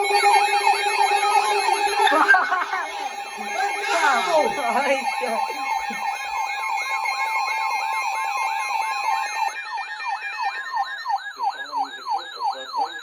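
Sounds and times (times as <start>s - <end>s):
siren-like rising sweep: 0.0s - 13.0s
higher warbling tone: 2.0s - 6.1s
two-note attention tone: 2.0s - 6.2s.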